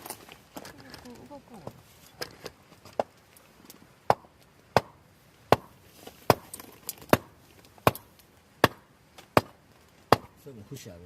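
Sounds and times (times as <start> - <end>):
wood being chopped: 2.9 - 3.2, 4.0 - 10.4.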